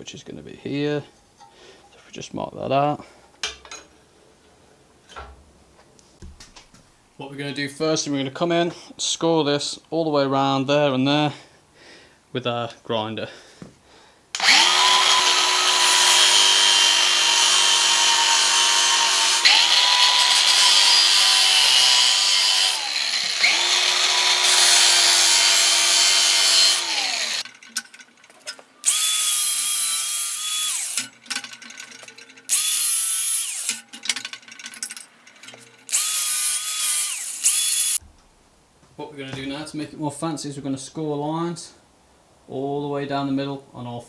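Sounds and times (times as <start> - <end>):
angle grinder grinding steel: 14.4 - 38.0.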